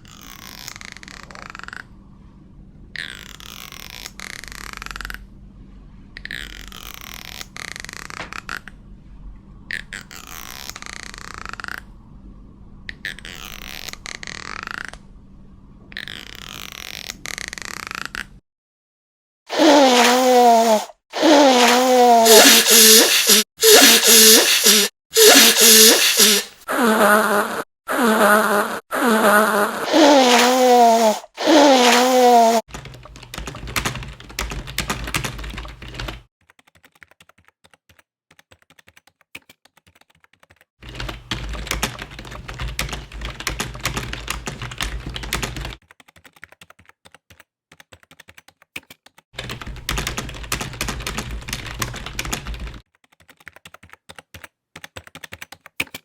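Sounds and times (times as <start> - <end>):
comb teeth raked: 19.5 - 26.6
person blowing nose: 19.5 - 32.7.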